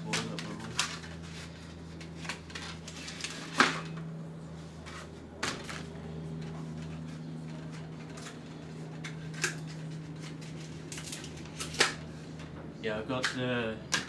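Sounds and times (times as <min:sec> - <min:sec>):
packaging clicks and rustles: 0:00.0 - 0:03.9, 0:05.4 - 0:12.1
steady low hum: 0:00.0 - 0:14.0.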